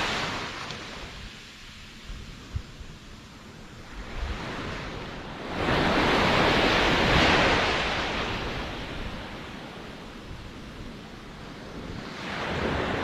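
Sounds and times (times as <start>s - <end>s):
ocean wave breaking: 0.0s - 1.3s, 4.0s - 9.8s.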